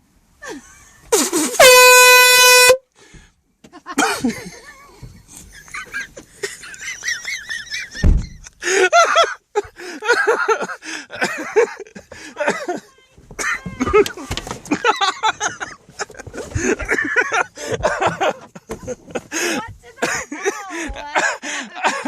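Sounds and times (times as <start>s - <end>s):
air horn blast: 1.2s - 2.8s
low thump: 8.0s - 8.5s.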